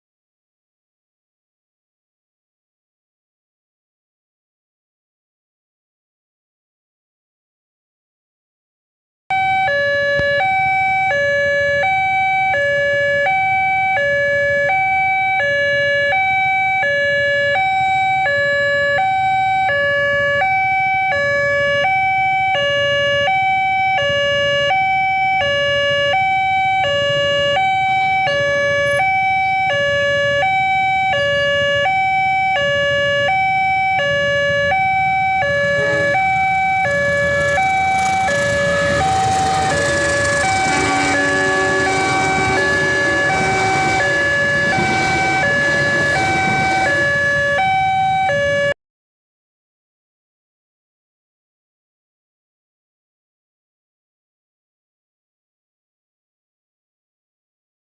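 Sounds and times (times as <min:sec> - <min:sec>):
two-tone crossing alarm: 0:09.3 - 0:48.8.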